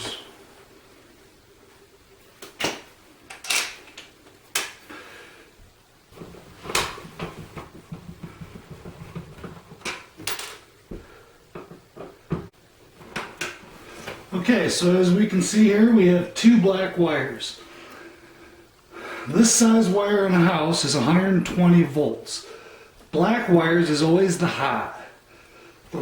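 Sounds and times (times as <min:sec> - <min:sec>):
rapid scraping and rattling: 0:06.2 - 0:10.2.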